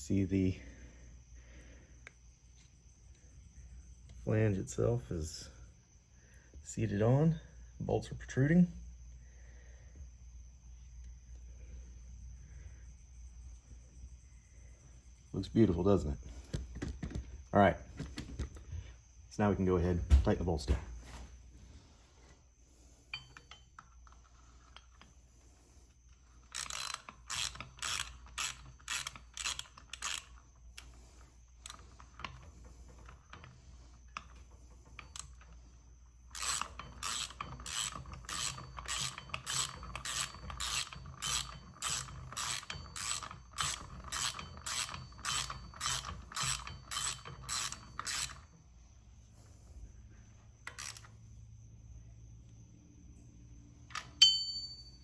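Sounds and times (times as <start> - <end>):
hand ratchet clicking: 26.1 - 35.6, 36.3 - 48.5, 50.7 - 51.1.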